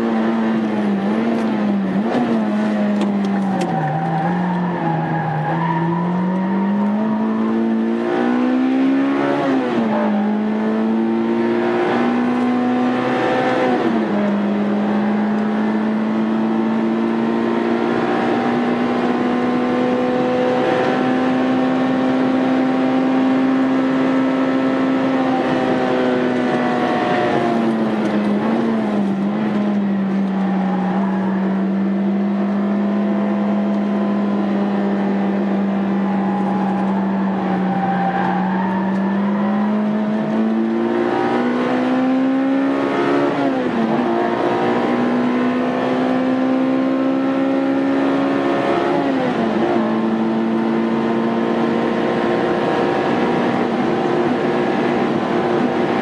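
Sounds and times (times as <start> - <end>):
car engine revving: 0.0 - 56.0.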